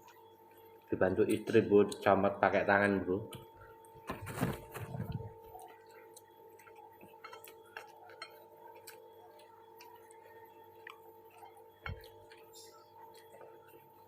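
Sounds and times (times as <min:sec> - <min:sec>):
faint steady hum: 0:00.0 - 0:14.0
chewing and mouth noises: 0:04.8 - 0:14.0.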